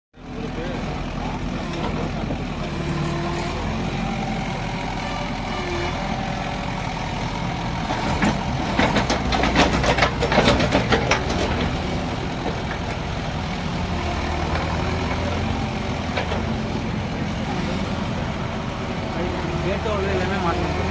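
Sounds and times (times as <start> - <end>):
diesel engine running: 0.2 - 20.9
rapid irregular engine knocks: 7.9 - 13.2.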